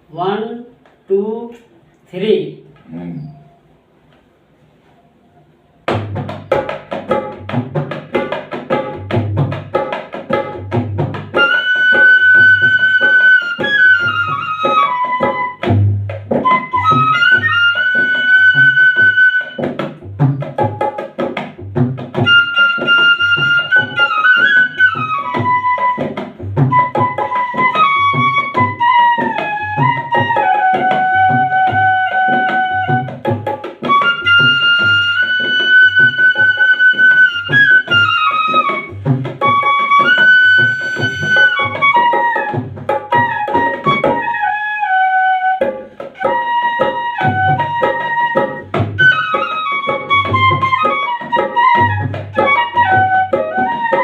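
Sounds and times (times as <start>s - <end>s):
hand percussion beat: 5.8s - 54.0s
flute melody: 11.3s - 20.8s, 22.2s - 54.0s.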